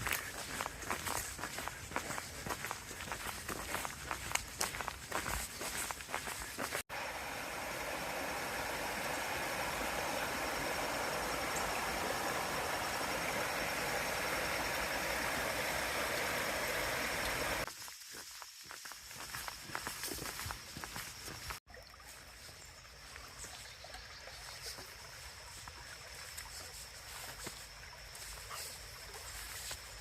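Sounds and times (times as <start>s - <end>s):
stream water rushing: 0.0s - 17.7s.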